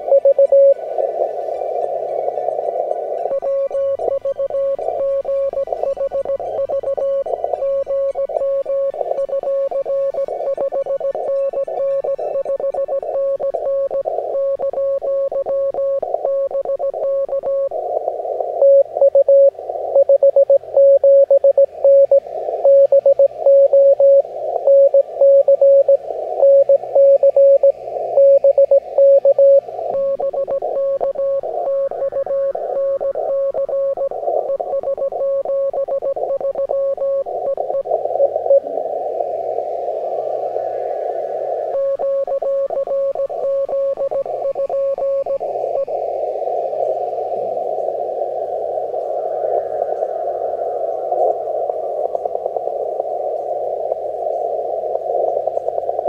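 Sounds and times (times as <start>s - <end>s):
receiver hiss: 0.0s - 56.0s
morse code tone: 0.1s - 0.8s, 18.6s - 38.6s.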